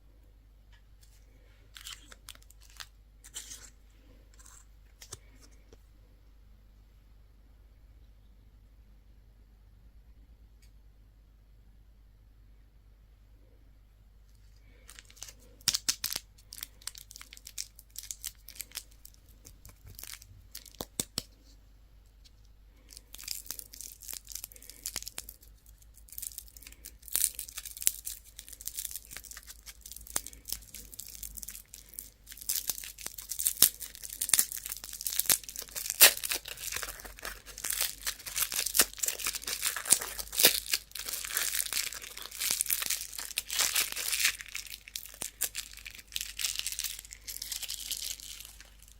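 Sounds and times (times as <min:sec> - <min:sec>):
candy wrappers crinkling: 0:01.0 - 0:05.5, 0:14.6 - 0:21.3, 0:22.8 - 0:48.9.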